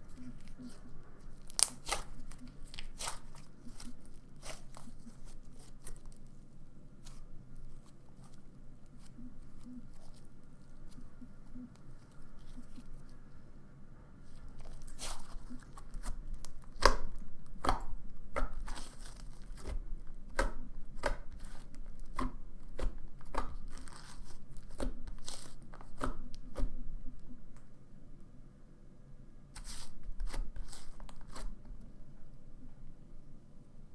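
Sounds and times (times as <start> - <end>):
slime squished with sticky pops: 0.2 - 6.2, 14.6 - 26.7.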